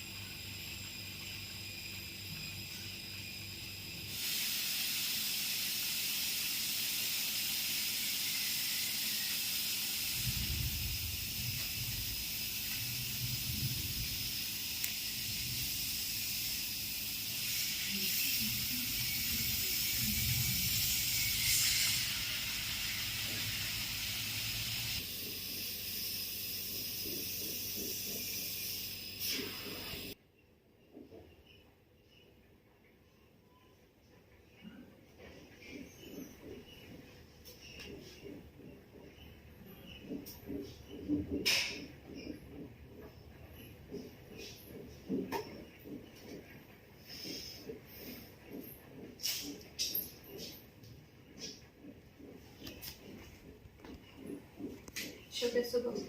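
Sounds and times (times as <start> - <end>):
gas hissing: 3.3 - 30.2.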